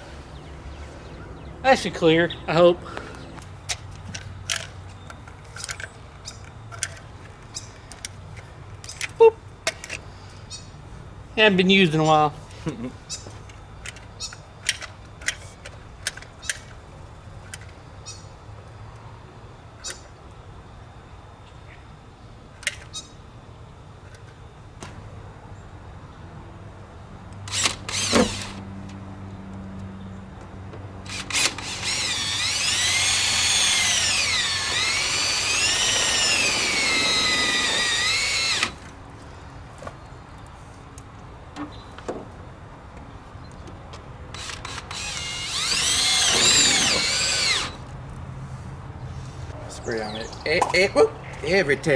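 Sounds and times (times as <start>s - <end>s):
power drill whining: 27.5s - 28.6s, 31.1s - 38.9s, 44.4s - 47.8s.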